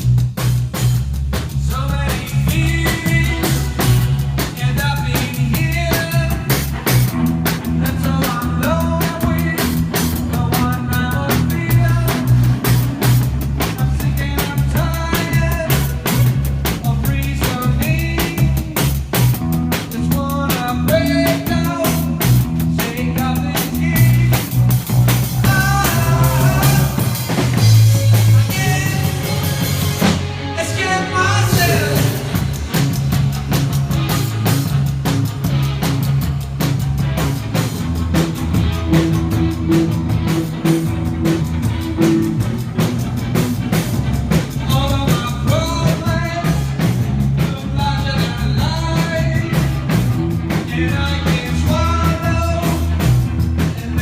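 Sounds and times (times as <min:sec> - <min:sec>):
bass guitar: 0:00.0 - 0:54.0
drum kit beat: 0:00.0 - 0:54.0
electric guitar: 0:00.0 - 0:54.0
man singing: 0:01.5 - 0:32.6, 0:44.3 - 0:54.0.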